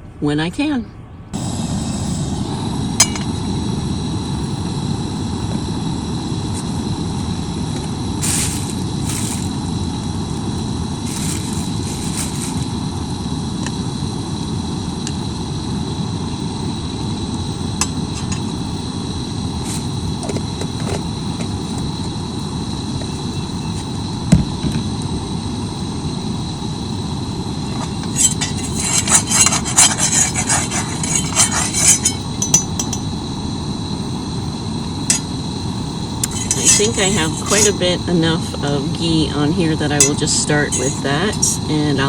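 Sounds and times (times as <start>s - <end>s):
range hood fan humming: 0.0s - 42.0s
utensils clinking on cookware: 28.2s - 33.0s, 36.2s - 37.8s, 40.0s - 41.6s.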